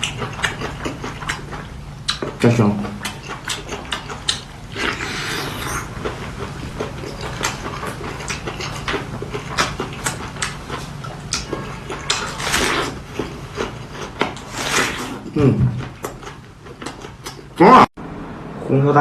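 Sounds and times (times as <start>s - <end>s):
person chewing and lip-smacking: 0.0s - 17.6s
person slurping: 3.8s - 5.9s, 13.6s - 15.4s.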